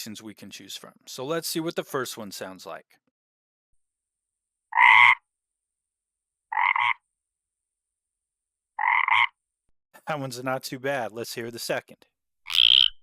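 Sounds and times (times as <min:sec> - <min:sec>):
deep frog croaking: 0:04.7 - 0:05.3, 0:06.5 - 0:07.0, 0:08.8 - 0:09.4, 0:12.5 - 0:13.0.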